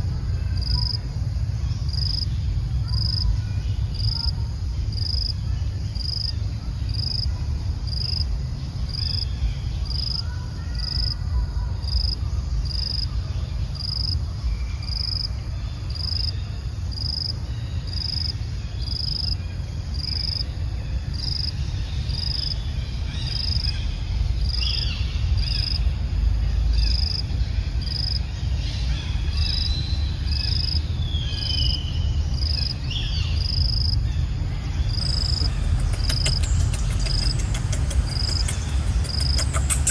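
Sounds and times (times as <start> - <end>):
steady low rumble: 20.5 - 39.9
insect chirping: 27.8 - 28.2, 29.3 - 39.9.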